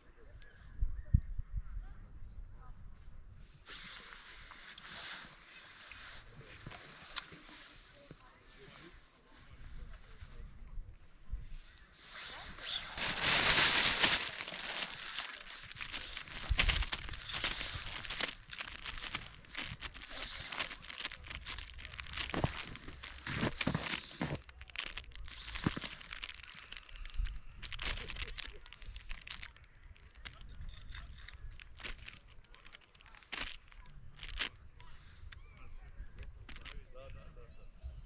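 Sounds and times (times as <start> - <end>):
rustling and crinkling: 3.7 - 37.2.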